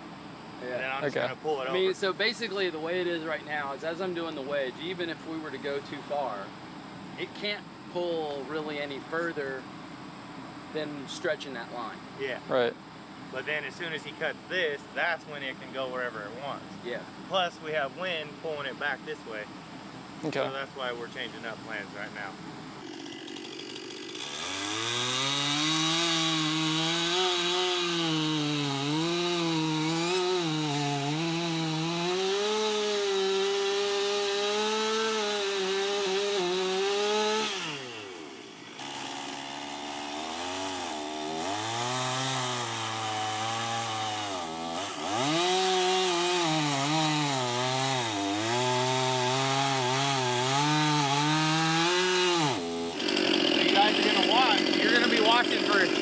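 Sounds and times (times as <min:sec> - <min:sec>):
chainsaw cutting wood: 0:22.8 - 0:56.0.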